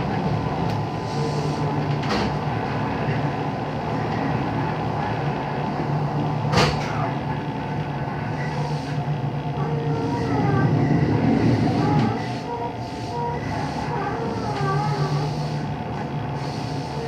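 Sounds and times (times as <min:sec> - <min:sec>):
train running rumble and hum: 0:00.0 - 0:17.0.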